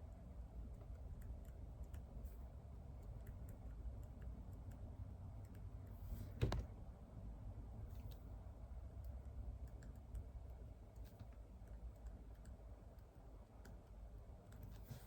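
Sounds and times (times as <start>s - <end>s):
low steady hum: 0.0s - 15.0s
faint clicks and taps: 9.0s - 15.0s.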